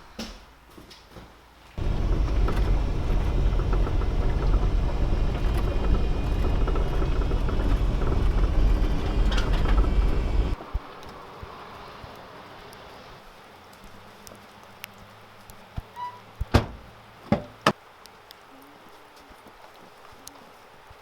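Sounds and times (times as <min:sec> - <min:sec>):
car road and engine rumble: 0:01.8 - 0:11.3.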